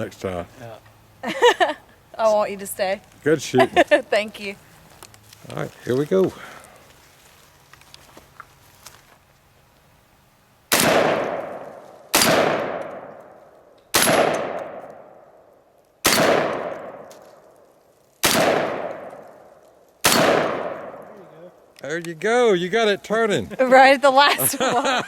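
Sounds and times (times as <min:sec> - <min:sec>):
shotgun shots: 0:10.7 - 0:13.3, 0:13.9 - 0:15.2, 0:16.0 - 0:17.1, 0:18.2 - 0:19.3, 0:20.0 - 0:21.2.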